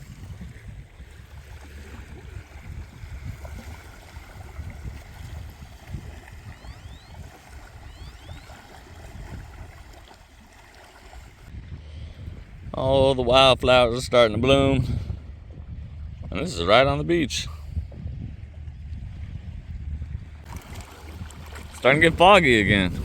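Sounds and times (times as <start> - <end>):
small waves washing on beach: 0.0 - 12.6, 20.4 - 23.0
wind buffeting microphone: 0.0 - 23.0.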